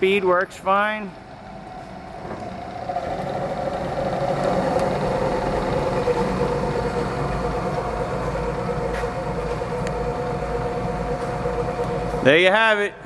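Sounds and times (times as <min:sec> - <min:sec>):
drill press motor humming: 0:00.1 - 0:12.8.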